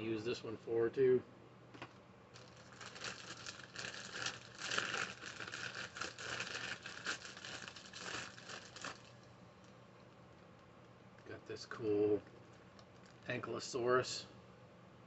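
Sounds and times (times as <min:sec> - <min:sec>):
plastic bag crinkling: 0:02.3 - 0:09.3, 0:12.3 - 0:13.3.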